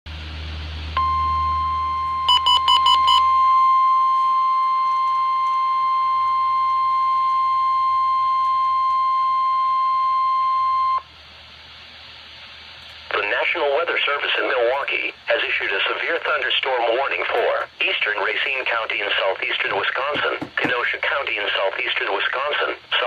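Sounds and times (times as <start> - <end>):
quick beeps: 1.0 - 4.1
steady high alarm tone: 1.0 - 11.0.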